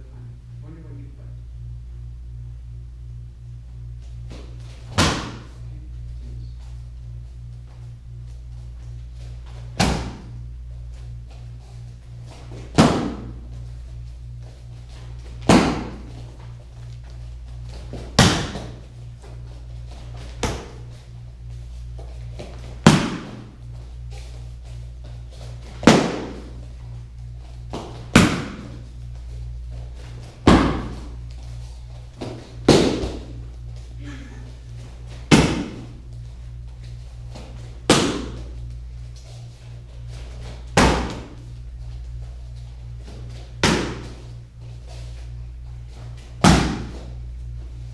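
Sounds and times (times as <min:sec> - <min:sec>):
steady low hum: 0:00.0 - 0:47.9
kicks striking a kicking pad: 0:04.3 - 0:05.5, 0:09.6 - 0:10.3, 0:12.5 - 0:13.4, 0:15.4 - 0:16.2, 0:17.7 - 0:18.8, 0:20.2 - 0:20.8, 0:22.4 - 0:23.5, 0:25.6 - 0:26.6, 0:27.7 - 0:28.9, 0:30.2 - 0:31.2, 0:32.2 - 0:33.4, 0:35.2 - 0:36.0, 0:37.4 - 0:38.6, 0:40.4 - 0:41.4, 0:43.0 - 0:44.3, 0:46.4 - 0:47.2.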